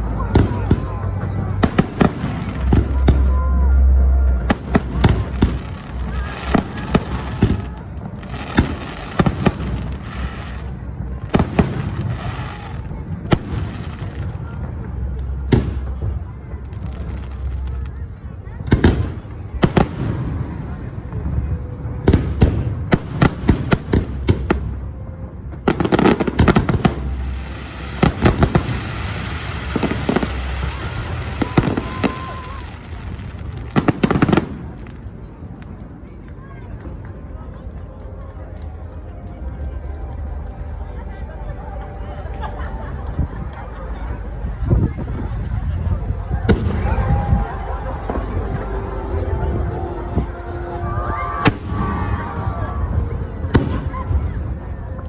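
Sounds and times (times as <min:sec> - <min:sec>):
fireworks bursting in volleys: 0:00.0 - 0:55.0
steady low rumble: 0:00.0 - 0:55.0
steady rumble: 0:37.3 - 0:55.0.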